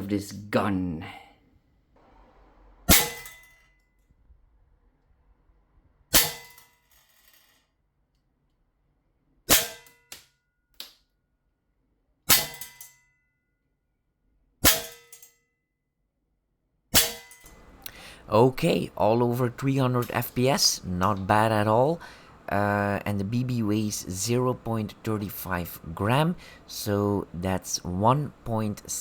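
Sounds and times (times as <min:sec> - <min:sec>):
bb pistol shots with metallic ring: 0:12.3 - 0:12.9, 0:14.6 - 0:15.2.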